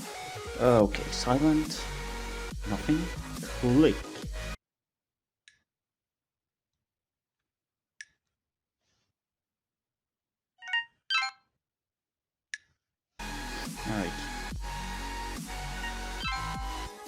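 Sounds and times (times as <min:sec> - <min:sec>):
phone two-tone alert: 0:16.2 - 0:16.7.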